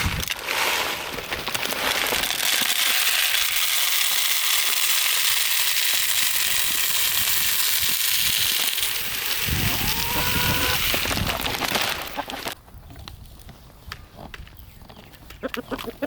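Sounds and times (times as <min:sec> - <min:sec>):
feed pellets pouring: 0:00.0 - 0:12.6.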